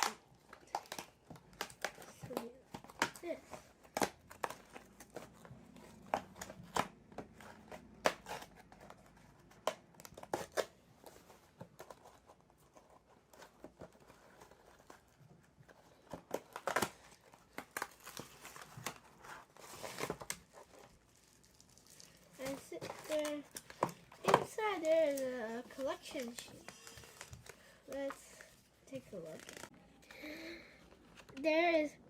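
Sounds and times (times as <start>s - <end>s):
toy packaging crinkling and tearing: 13.3s - 29.7s.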